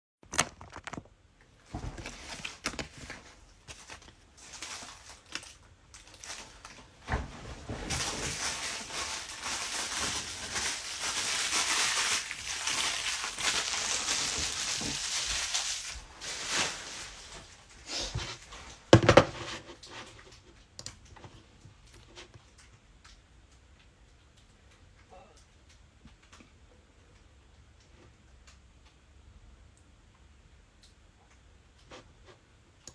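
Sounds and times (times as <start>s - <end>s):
plastic wrapping crinkling: 0.2s - 20.4s
handling knocks: 18.9s - 19.6s.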